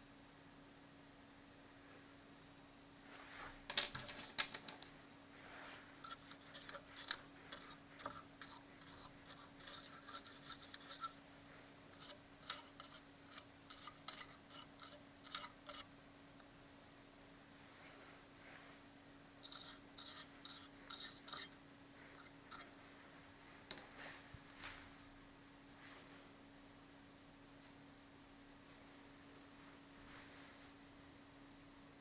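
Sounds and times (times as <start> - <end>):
faint steady hum: 0.0 - 32.0
small parts clicking and scraping: 3.7 - 5.0, 5.9 - 11.2, 11.9 - 15.9, 19.4 - 22.7.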